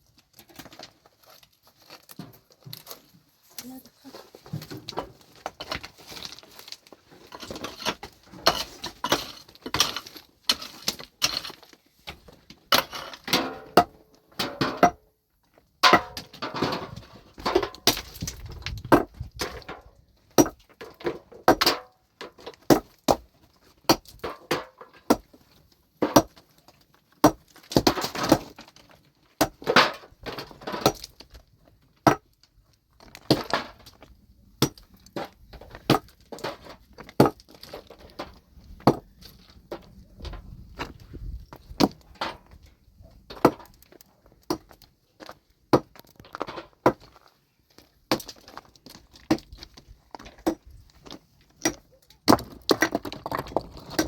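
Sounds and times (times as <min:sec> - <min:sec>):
stones knocking and clinking: 0:17.4 - 0:25.4, 0:33.0 - 0:42.1, 0:43.3 - 0:54.0.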